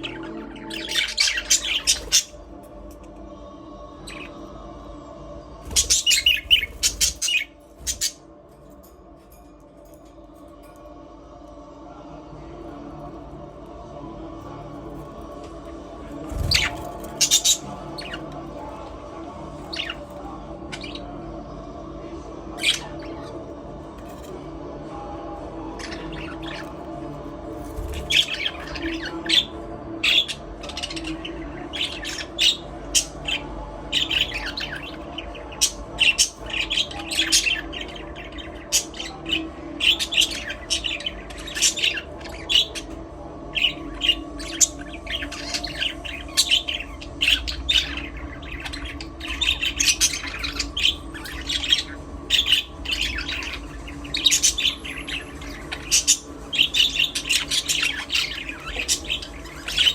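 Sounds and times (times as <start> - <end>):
budgerigars chirping: 0.0 - 2.4, 5.7 - 8.2, 16.3 - 18.7, 28.0 - 42.9, 43.5 - 59.9.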